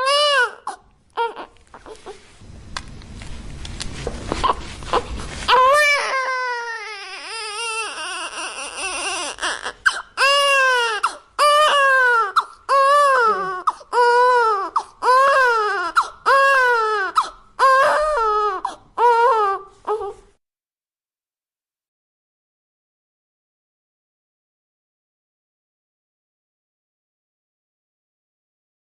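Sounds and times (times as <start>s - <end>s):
newborn baby crying: 0.0s - 2.3s, 4.4s - 20.4s.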